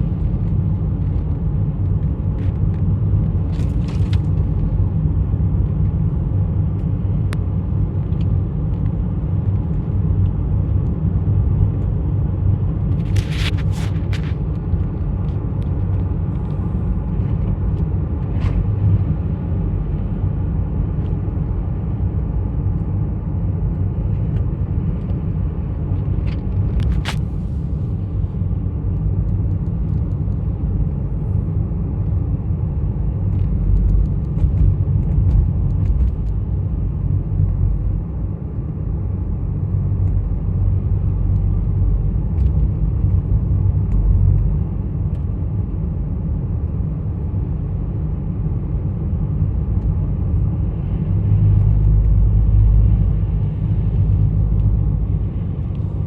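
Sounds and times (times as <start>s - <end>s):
low rumble: 0.0s - 56.0s.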